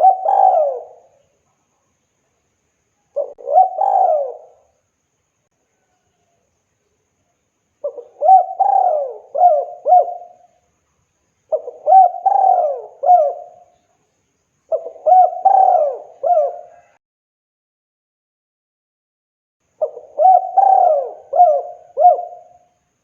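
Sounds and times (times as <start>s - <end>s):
dove cooing: 0.0s - 1.2s, 3.1s - 4.7s, 7.8s - 10.5s, 11.5s - 13.7s, 14.7s - 17.0s, 19.8s - 22.7s.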